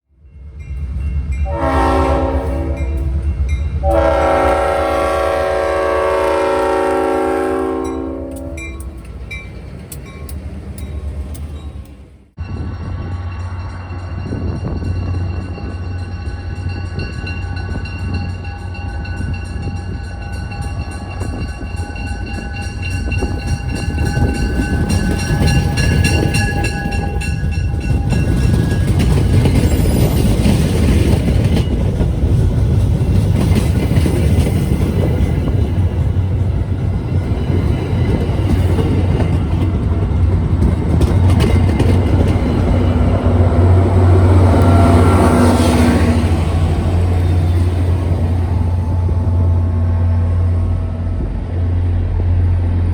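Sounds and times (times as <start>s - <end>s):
train passing rumble: 0.1s - 52.9s
train horn: 1.4s - 9.0s, 43.2s - 47.5s.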